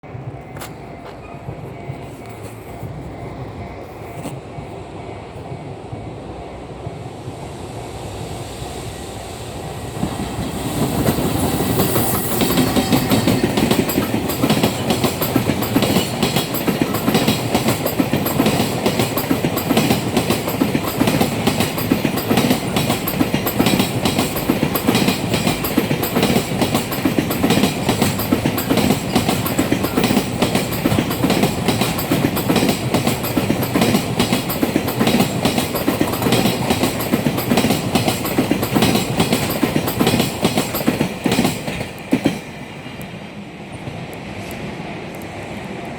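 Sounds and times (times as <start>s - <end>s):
freight train passing: 0.0s - 45.9s
train wheels clattering over rail joints: 10.0s - 42.6s.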